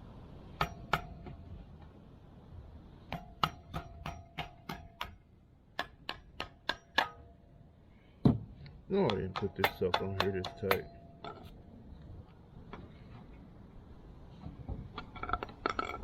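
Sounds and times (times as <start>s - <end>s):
tool tapping on metal: 0.6s - 1.5s, 3.1s - 5.2s, 5.8s - 7.4s, 9.0s - 11.6s.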